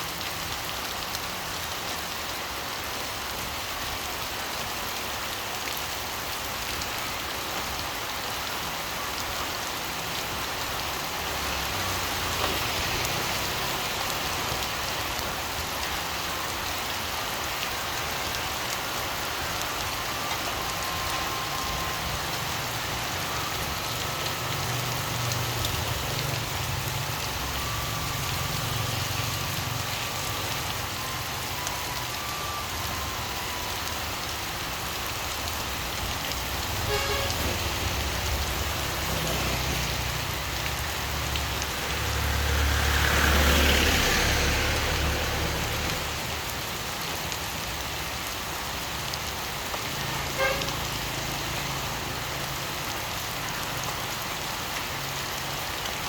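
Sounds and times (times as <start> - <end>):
steady rain falling: 0.0 - 56.0
vehicle passing: 36.6 - 46.3.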